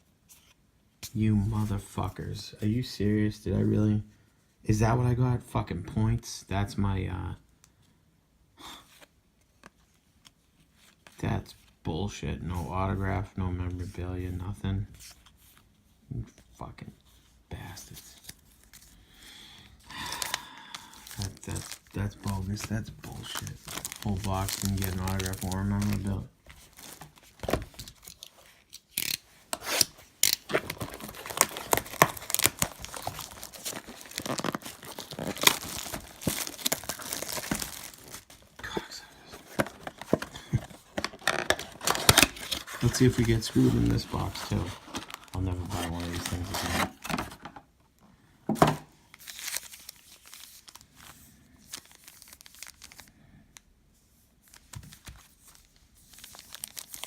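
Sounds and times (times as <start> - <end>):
wrapper crackling and ripping: 19.9 - 47.2, 49.1 - 53.2, 54.4 - 57.0
packaging tearing: 20.0 - 38.6, 39.2 - 47.2, 49.1 - 51.0, 51.6 - 53.1, 55.5 - 57.0.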